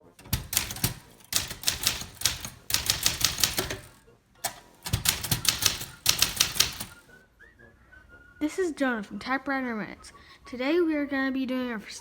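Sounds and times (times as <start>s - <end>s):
manual typewriter typing: 0.0s - 7.1s.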